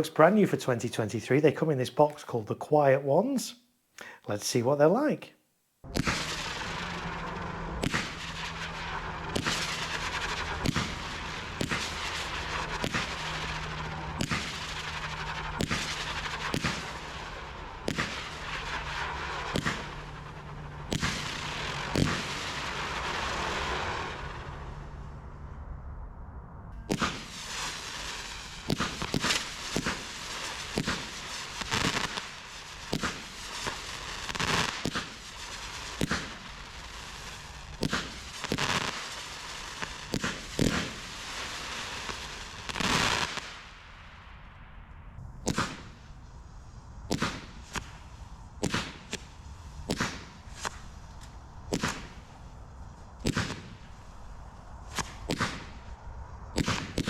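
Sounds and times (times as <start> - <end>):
firework launch pops: 5.8 - 20.2, 20.9 - 24.2, 26.7 - 44.1, 45.4 - 46.2, 47.1 - 52.3, 53.1 - 54.0, 54.9 - 57.0
firework hiss and crackle: 5.8 - 25.0, 26.8 - 44.4, 45.2 - 57.0.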